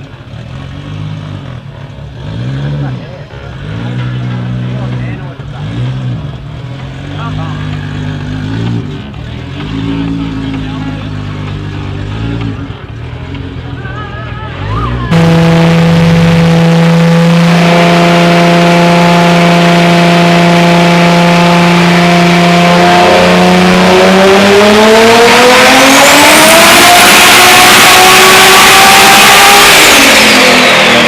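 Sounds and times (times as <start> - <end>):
drag car engine revving: 0.0 - 13.7, 14.6 - 31.0.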